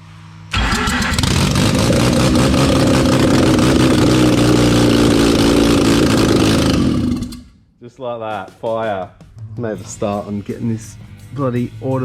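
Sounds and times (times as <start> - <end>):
rotary engine running loud: 0.6 - 7.5.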